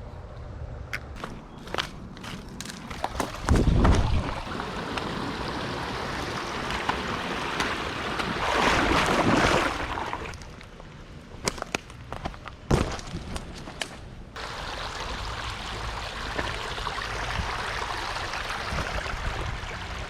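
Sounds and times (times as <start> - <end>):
creek water rushing: 4.3 - 10.3, 14.4 - 20.0.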